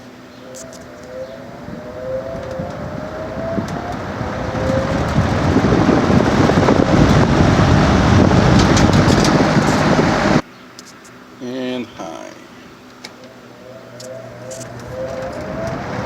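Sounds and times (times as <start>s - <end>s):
box fan air rushing: 0.0s - 10.4s, 14.0s - 16.0s
faint motor whine: 0.0s - 16.0s.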